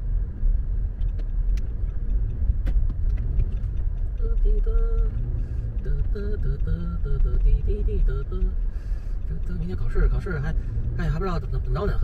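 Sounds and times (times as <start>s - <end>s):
road and engine rumble in car: 0.0s - 12.0s
faint clicks: 0.9s - 7.6s.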